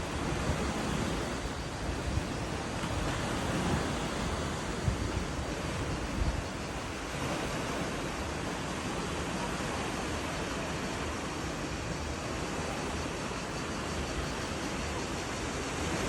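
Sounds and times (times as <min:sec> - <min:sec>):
wind rumble on microphone: 0:00.0 - 0:10.8
sea waves washing on shore: 0:00.0 - 0:16.0.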